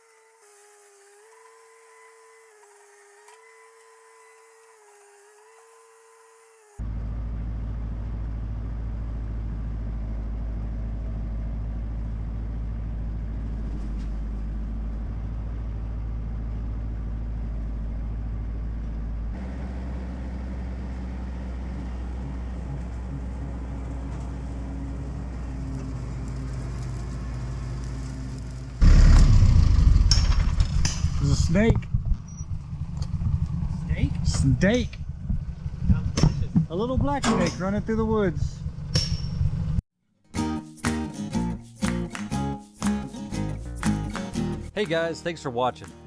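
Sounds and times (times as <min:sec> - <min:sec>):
vehicle engine running: 0:06.8 - 0:39.8.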